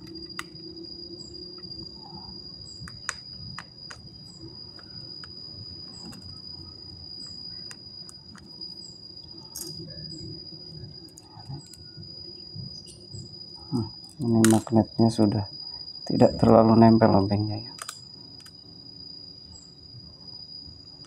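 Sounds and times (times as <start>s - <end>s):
screwdriver clicking on laptop casing: 17.8s - 18.5s.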